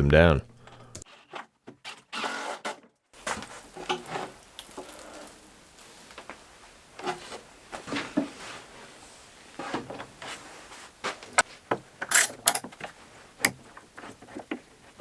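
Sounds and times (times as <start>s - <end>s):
wood and hardware clicking and rattling: 11.7s - 14.7s.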